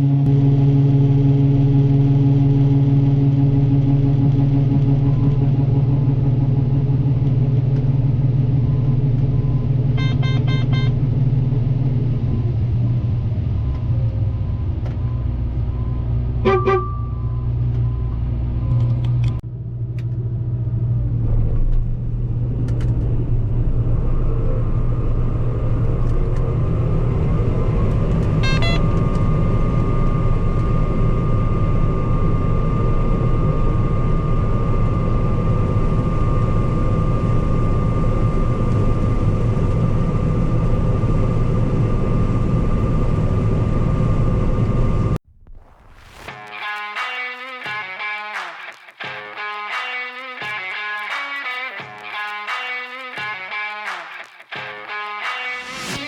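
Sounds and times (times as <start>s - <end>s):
high steady whine: 0.0s - 18.7s, 21.0s - 56.0s.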